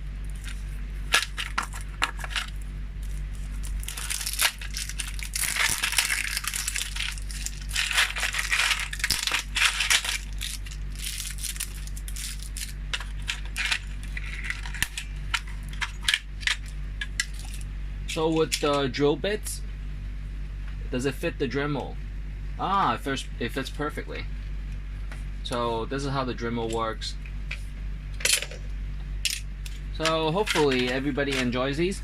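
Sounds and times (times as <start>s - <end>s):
metal bits clicking and rattling: 3.9s - 15.0s.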